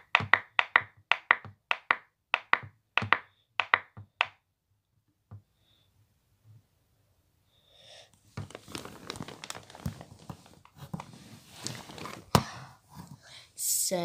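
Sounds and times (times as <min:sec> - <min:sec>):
small clicks and taps: 0:00.1 - 0:04.4
package crinkling: 0:08.4 - 0:10.6.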